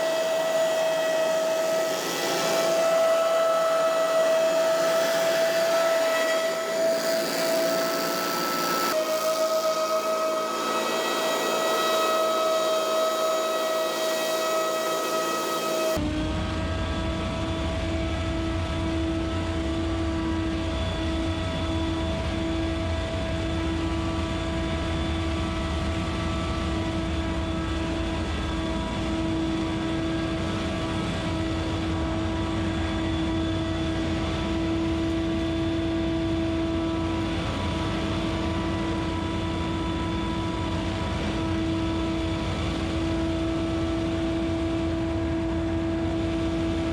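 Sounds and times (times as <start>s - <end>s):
leaf blower running: 0.0s - 16.4s.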